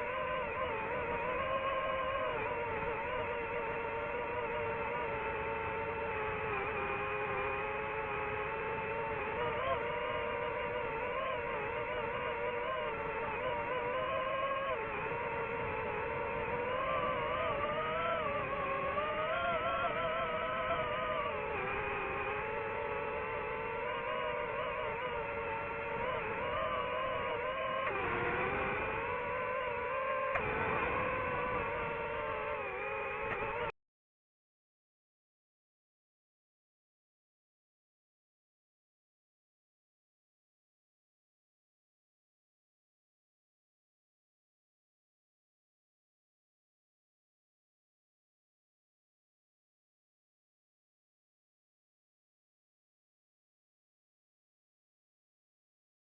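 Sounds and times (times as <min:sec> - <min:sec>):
drone propellers whining: 0:00.0 - 0:33.8.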